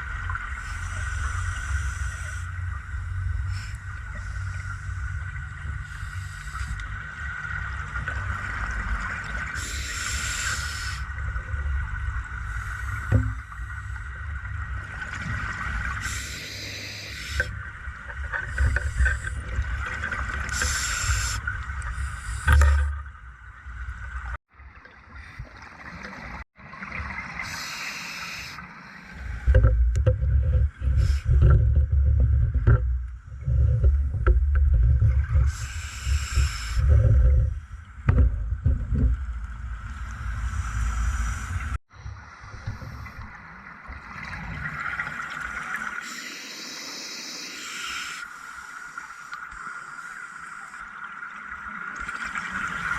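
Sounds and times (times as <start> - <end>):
low underwater rumble: 29.2 - 44.8.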